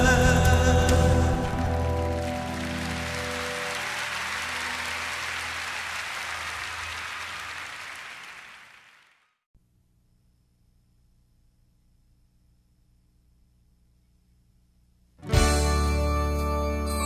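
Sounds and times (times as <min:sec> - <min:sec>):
audience applause: 0:00.4 - 0:09.3.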